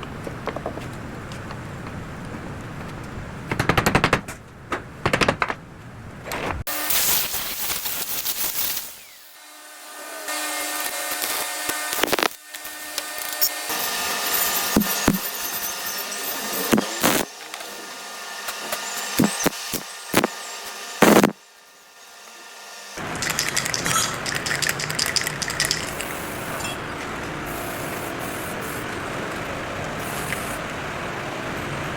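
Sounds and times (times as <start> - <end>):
sharp metallic clicks and scrapes: 6.3 - 9.2, 10.8 - 17.7, 23.0 - 26.8
machine running noise: 6.7 - 31.9.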